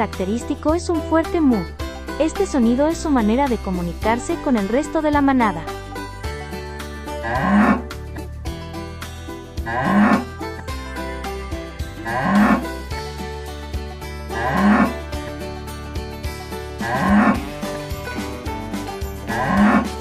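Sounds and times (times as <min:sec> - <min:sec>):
background music: 0:00.0 - 0:20.0
cow mooing: 0:07.2 - 0:08.0, 0:09.6 - 0:10.4, 0:12.0 - 0:12.8, 0:14.3 - 0:15.1, 0:16.8 - 0:17.5, 0:19.3 - 0:20.0.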